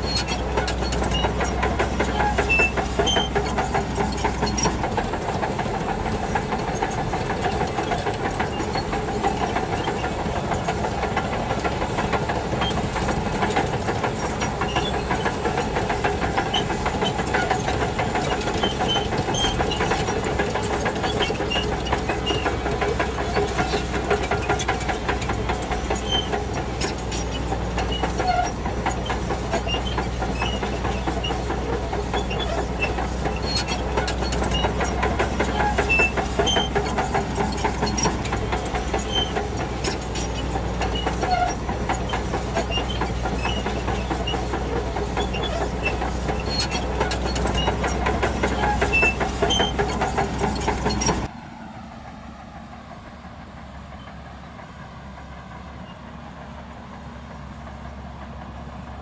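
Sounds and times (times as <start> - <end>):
bulldozer diesel engine running: 0.0 - 59.0.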